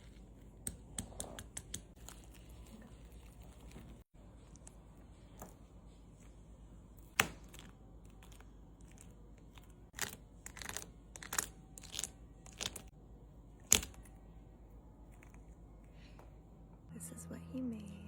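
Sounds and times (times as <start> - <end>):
small objects crackling and scraping: 1.9 - 4.8, 7.5 - 12.9.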